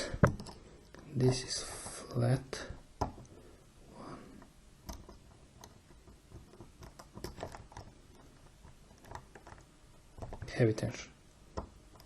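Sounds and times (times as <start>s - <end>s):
lock pick clicking and scraping: 4.8s - 10.5s.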